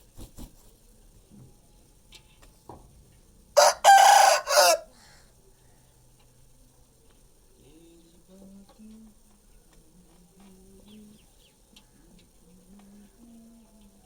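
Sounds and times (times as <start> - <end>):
rooster crowing: 3.6 - 5.2.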